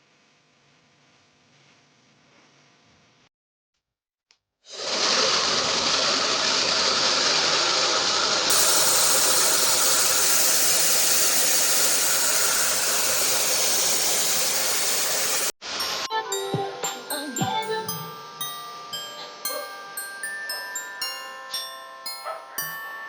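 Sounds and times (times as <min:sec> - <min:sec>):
hair dryer blowing: 0:04.7 - 0:15.9.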